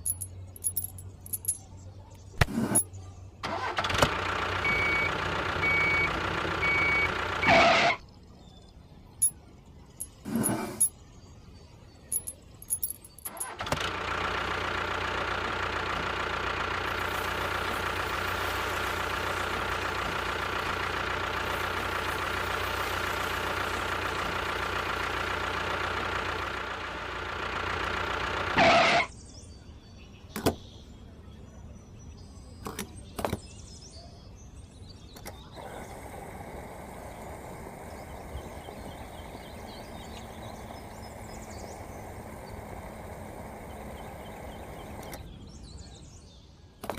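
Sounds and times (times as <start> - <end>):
faint motor hum: 34.7 - 46.8
motor running steadily: 35.6 - 45.3.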